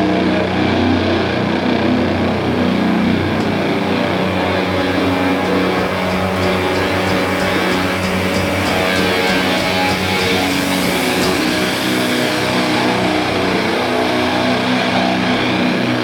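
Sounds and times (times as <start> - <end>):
metal band playing live: 0.0 - 16.0.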